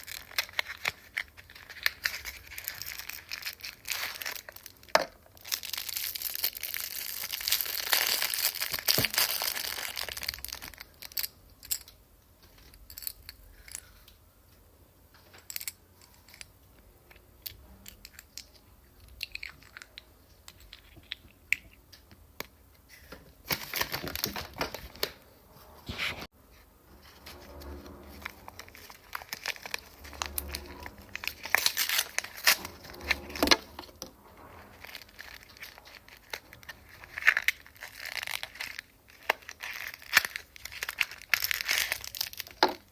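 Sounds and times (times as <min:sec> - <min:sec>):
packaging tearing and crinkling: 0:00.0 - 0:11.2, 0:23.5 - 0:25.2, 0:28.2 - 0:33.6, 0:34.8 - 0:42.9.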